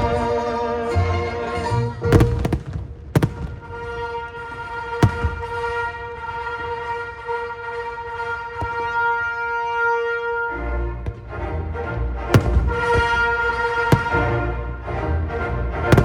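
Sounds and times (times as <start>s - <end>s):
firework shells bursting: 2.2s - 9.3s, 12.3s - 14.5s
music holding a sustained chord: 9.0s - 16.0s.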